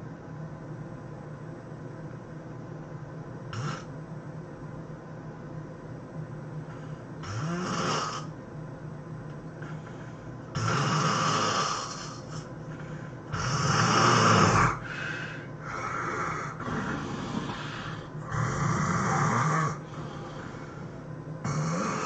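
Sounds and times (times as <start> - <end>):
person snoring heavily: 3.5 - 3.9, 7.2 - 8.3, 9.6 - 22.0.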